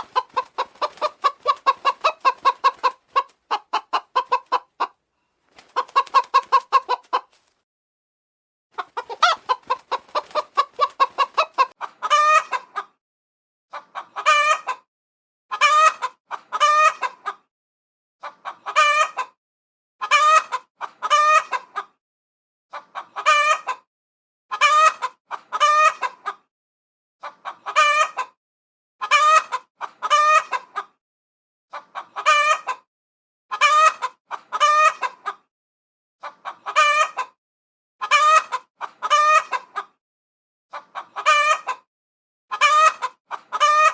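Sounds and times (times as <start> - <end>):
chickens wavering calls: 0.0 - 5.0, 5.6 - 7.4, 8.7 - 13.0, 13.7 - 14.9, 15.5 - 17.4, 18.2 - 19.4, 20.0 - 22.0, 22.7 - 23.9, 24.5 - 26.4, 27.2 - 28.4, 29.0 - 31.0, 31.7 - 32.9, 33.5 - 35.4, 36.2 - 37.4, 38.0 - 40.0, 40.7 - 41.9, 42.5 - 43.9
chickens clucking: 0.0 - 7.6, 8.7 - 13.0, 13.7 - 14.9, 15.5 - 17.5, 18.2 - 19.4, 20.0 - 22.0, 22.7 - 23.9, 24.5 - 26.5, 27.2 - 28.4, 29.0 - 31.0, 31.7 - 32.9, 33.5 - 35.5, 36.2 - 37.4, 38.0 - 40.0, 40.7 - 41.9, 42.5 - 43.9.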